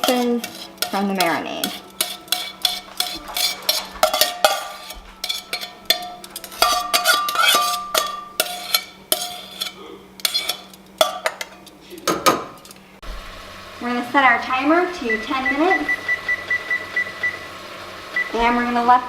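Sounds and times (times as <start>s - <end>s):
utensil clinking against dish: 0.0s - 12.8s.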